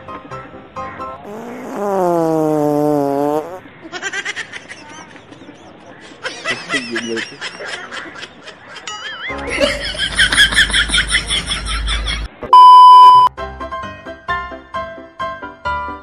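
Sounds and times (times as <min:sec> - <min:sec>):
loud steady beep tone: 0:12.5 - 0:13.3.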